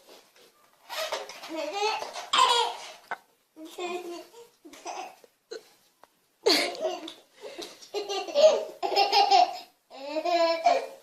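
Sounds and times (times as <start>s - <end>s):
baby laughing: 1.5s - 3.2s, 7.9s - 11.0s.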